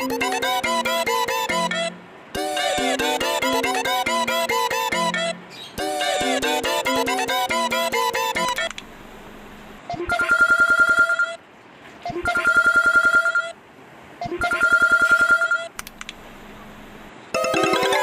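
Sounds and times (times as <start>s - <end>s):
old telephone ringing: 17.4s - 18.0s.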